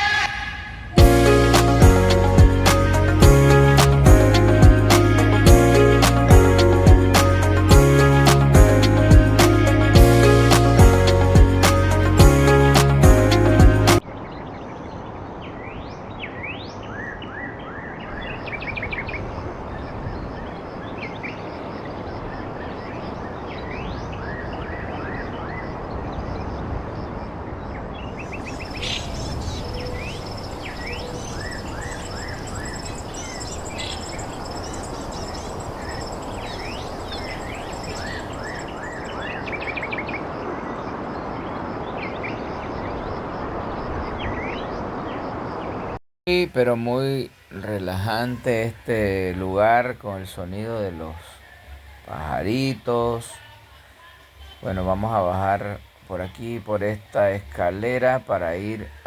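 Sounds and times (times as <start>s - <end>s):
small birds chirping: 14.0s - 59.0s
low background hiss: 46.3s - 59.0s
thin high tone: 46.3s - 59.0s.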